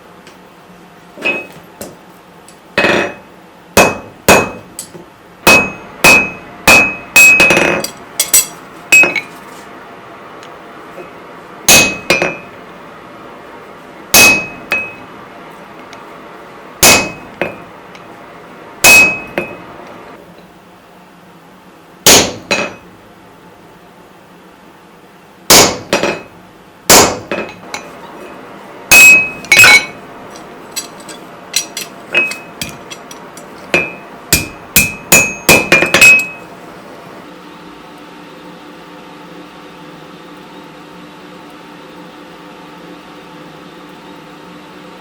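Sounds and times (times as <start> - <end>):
steady low hum: 0.0 - 41.3
anvil ringing: 1.2 - 1.6, 3.8 - 9.4, 11.7 - 12.5, 14.2 - 15.0, 16.8 - 17.6, 18.8 - 19.6, 28.9 - 36.5
hammer striking steel on anvil: 1.2 - 2.0, 2.8 - 9.4, 11.7 - 12.5, 14.1 - 15.1, 16.8 - 17.7, 18.8 - 19.6, 22.0 - 22.9, 25.5 - 27.9, 28.9 - 36.5.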